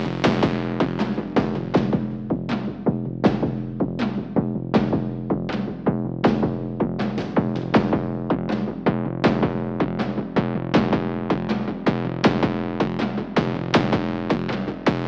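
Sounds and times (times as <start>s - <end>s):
drum machine beat: 0.0s - 15.0s.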